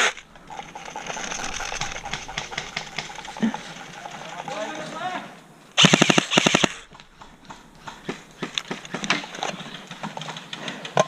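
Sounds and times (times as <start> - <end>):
airsoft rifle full-auto burst: 5.8 - 7.0
faint clicks: 6.2 - 11.0.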